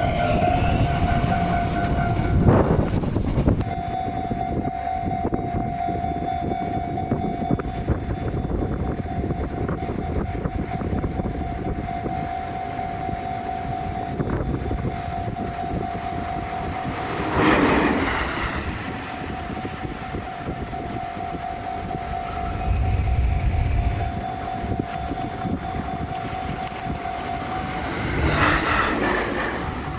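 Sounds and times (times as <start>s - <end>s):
train running over crossing: 0.0s - 29.9s
electronic crossing warning bell: 3.6s - 22.4s, 23.9s - 29.9s
loud noisy surge: 22.0s - 26.0s.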